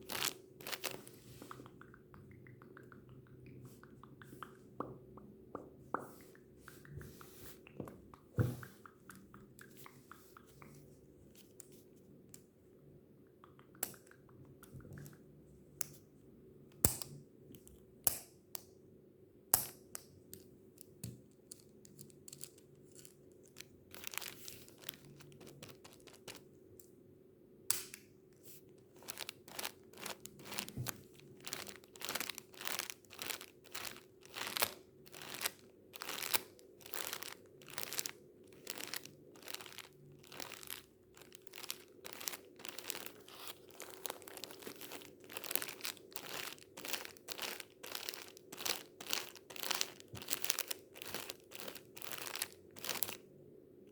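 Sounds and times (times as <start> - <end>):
tissues crinkling: 0.0 - 1.7, 21.9 - 26.5, 28.4 - 53.2.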